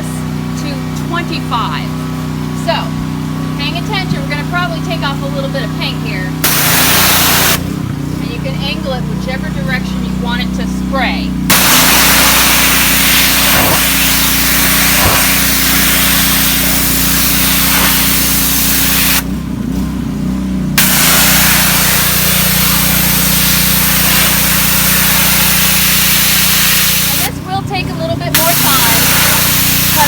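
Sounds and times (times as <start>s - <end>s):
gas engine running: 0.0s - 30.0s
high-pressure water jet hissing: 3.6s - 7.7s, 11.5s - 19.3s, 20.8s - 30.0s.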